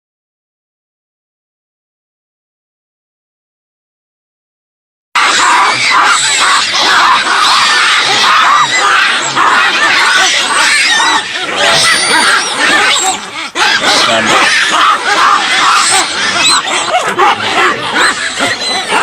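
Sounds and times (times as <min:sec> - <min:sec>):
animals squealing and screeching: 0:05.2 - 0:19.0.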